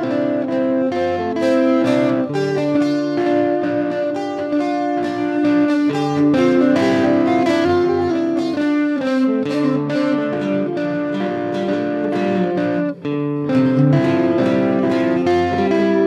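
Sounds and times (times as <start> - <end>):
plucked guitar music: 0.0 - 16.0.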